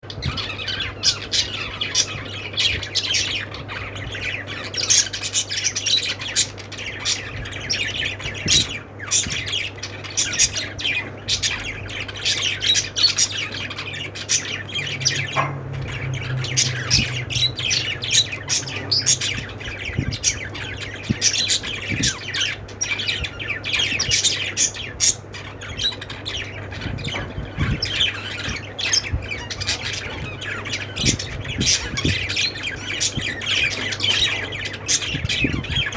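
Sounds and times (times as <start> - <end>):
low steady hum: 0.0 - 35.9
parrots chirping and squawking: 0.0 - 35.9.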